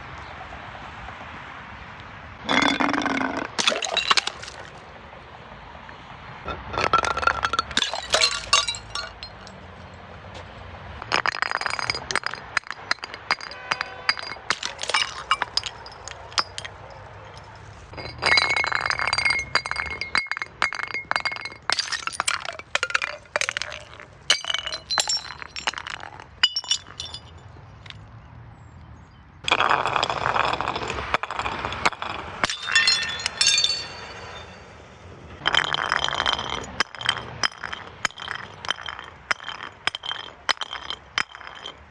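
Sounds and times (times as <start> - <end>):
glass bottles breaking: 2.5 - 4.8, 6.5 - 9.6, 11.0 - 27.4, 29.5 - 34.7, 35.4 - 41.9
glass shards clinking: 2.5 - 4.8, 6.5 - 9.6, 11.0 - 27.4, 29.5 - 34.7, 35.5 - 41.9.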